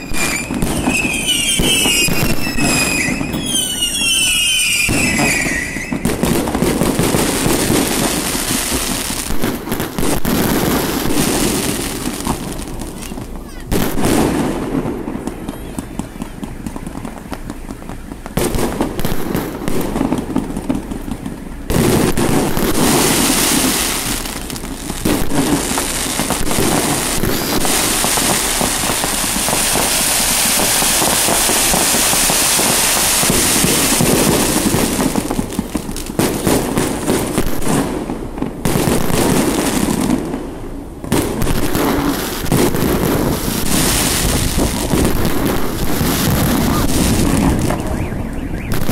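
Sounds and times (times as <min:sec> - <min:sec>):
fireworks bangs and crackling: 0:00.0 - 0:48.9.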